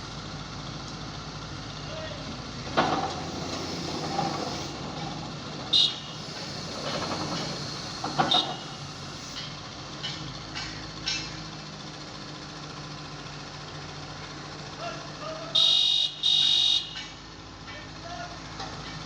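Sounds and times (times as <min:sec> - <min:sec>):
engine running: 0:00.0 - 0:19.0
impact hammer blows: 0:05.8 - 0:09.4.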